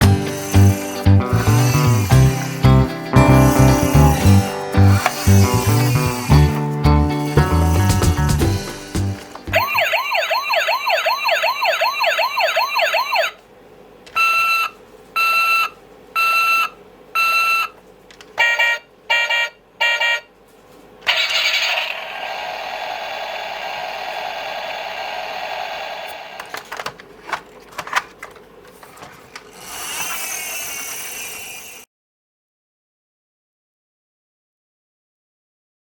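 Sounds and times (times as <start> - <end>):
hissy noisy electronic effect: 0.0 - 9.6, 21.2 - 26.5
electronic beeps: 9.5 - 13.3
toy wailing siren: 9.6 - 13.4, 18.4 - 20.3, 21.1 - 22.8.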